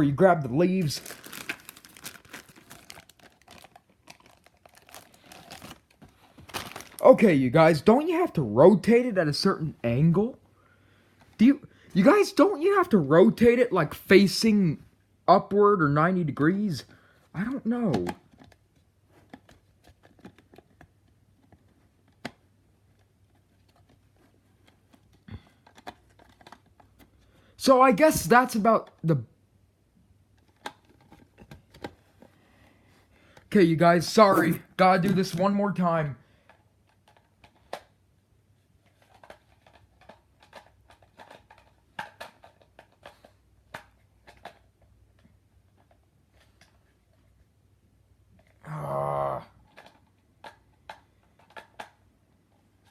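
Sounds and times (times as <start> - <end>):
plastic game parts clicking: 38.9 - 44.7, 49.7 - 52.0.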